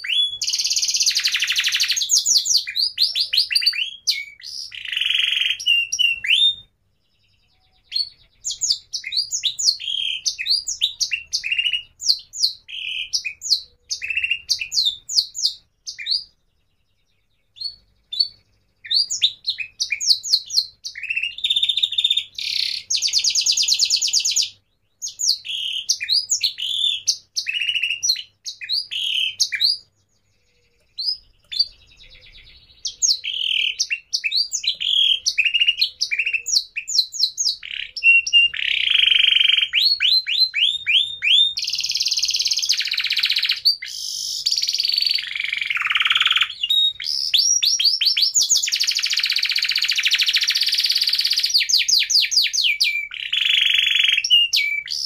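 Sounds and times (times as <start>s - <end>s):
small bird singing: 0.0s - 55.0s.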